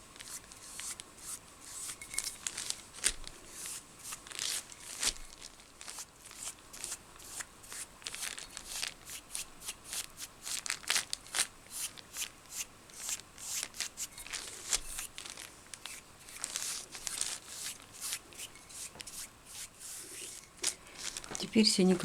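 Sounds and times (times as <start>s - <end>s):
paintbrush scratchy strokes: 0.2s - 2.2s, 15.9s - 21.4s.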